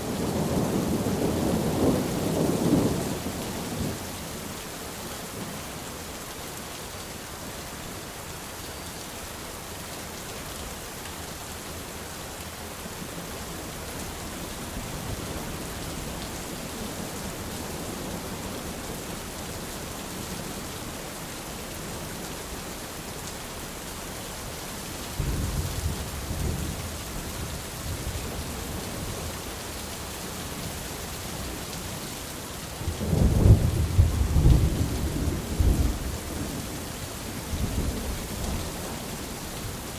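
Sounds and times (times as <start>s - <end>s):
rain falling in forest: 0.0s - 39.9s
thunder rumbling: 32.8s - 36.6s.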